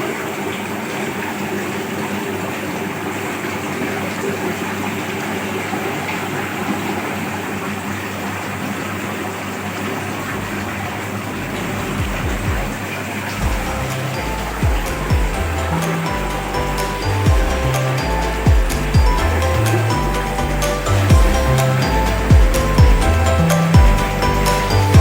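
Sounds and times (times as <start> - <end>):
low thumps: 11.4 - 12.8, 13.4 - 25.0.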